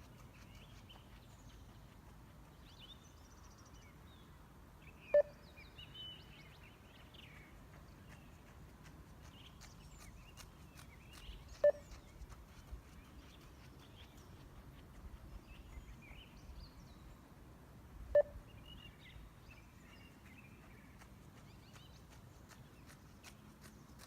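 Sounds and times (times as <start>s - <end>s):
short electronic beeps: 5.2s - 5.4s, 11.6s - 11.8s, 18.2s - 18.4s.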